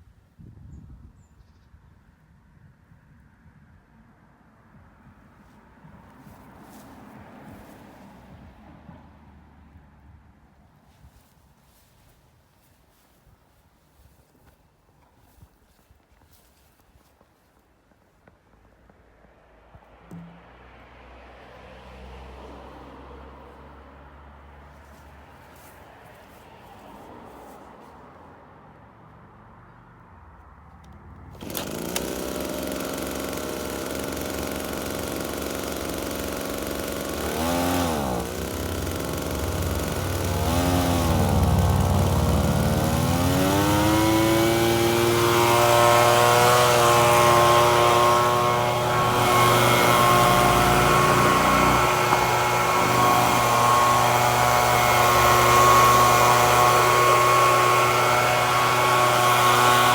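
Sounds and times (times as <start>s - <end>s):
leaf blower engine revving: 20.1s - 20.4s, 31.3s - 59.9s.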